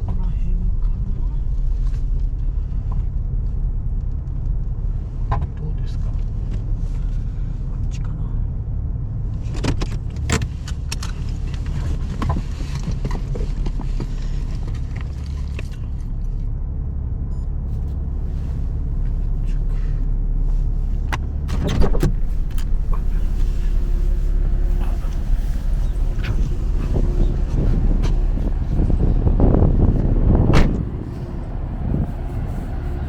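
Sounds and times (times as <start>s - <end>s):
car engine rumble: 0.0s - 33.0s
light clicks and rattles: 9.3s - 16.5s.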